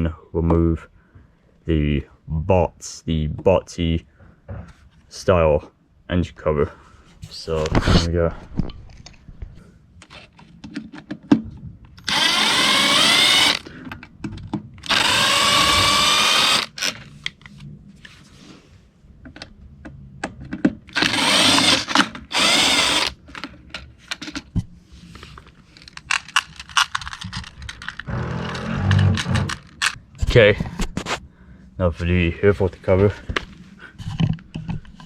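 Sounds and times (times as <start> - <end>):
impact driver running: 12.0 - 13.7, 14.8 - 16.9, 21.0 - 23.2
handling clicks and knocks: 25.8 - 30.0.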